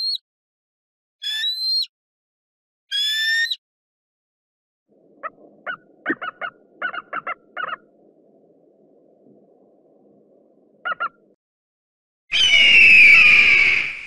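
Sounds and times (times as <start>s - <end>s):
eagle calling: 1.2s - 1.9s, 2.9s - 3.6s, 5.2s - 8.0s, 10.8s - 11.3s.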